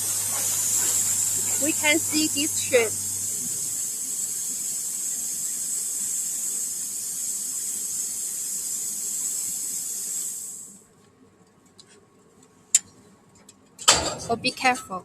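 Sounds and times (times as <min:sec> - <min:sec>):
plasma cutting torch hissing: 0:00.0 - 0:10.8.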